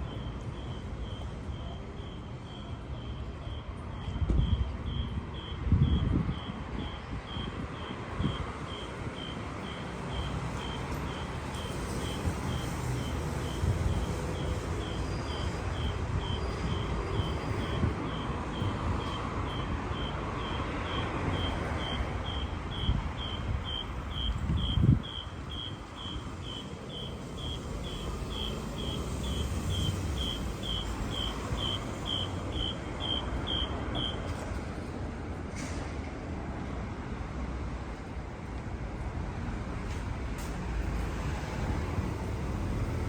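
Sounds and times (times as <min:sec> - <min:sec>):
city street traffic: 0:00.0 - 0:43.0.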